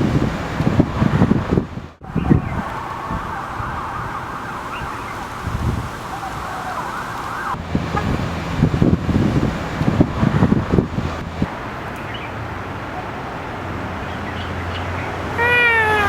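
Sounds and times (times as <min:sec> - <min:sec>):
siren wailing: 0:02.1 - 0:05.2, 0:15.3 - 0:16.0.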